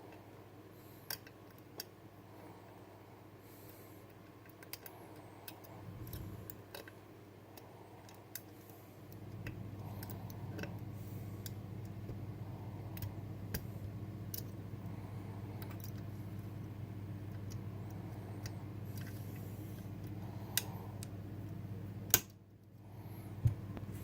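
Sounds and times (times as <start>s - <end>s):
low hum: 5.0s - 6.6s.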